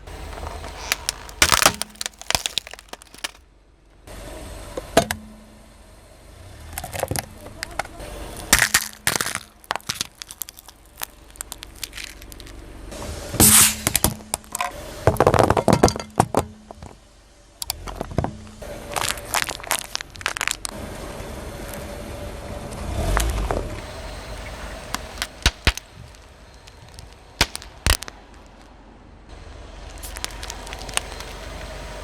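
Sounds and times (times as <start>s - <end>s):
plastic toy cracking and snapping: 0.3s - 3.4s, 24.9s - 28.3s, 30.0s - 31.6s.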